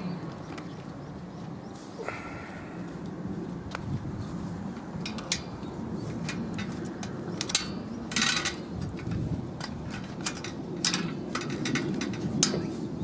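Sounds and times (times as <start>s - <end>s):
rattling scrape: 5.1s - 13.0s.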